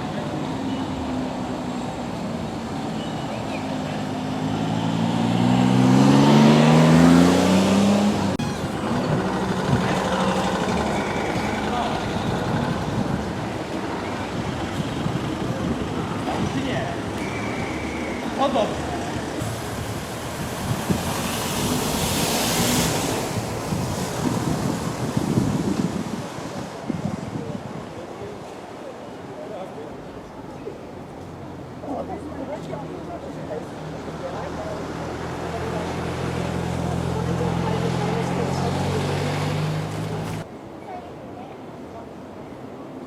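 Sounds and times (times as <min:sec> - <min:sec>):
vehicle engine accelerating: 0:03.8 - 0:13.4, 0:34.4 - 0:40.5
wind buffeting microphone: 0:08.6 - 0:17.2, 0:19.2 - 0:28.4.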